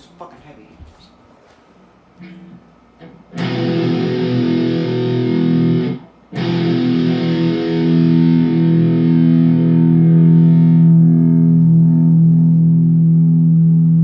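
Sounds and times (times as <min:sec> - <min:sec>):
distorted electric guitar chord: 0:03.3 - 0:14.0.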